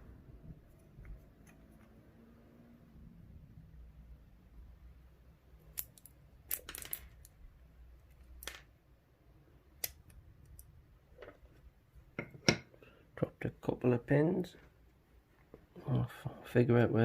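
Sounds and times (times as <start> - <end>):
rattle of small parts: 5.7 - 7.4
small metal clicks: 5.7 - 7.4.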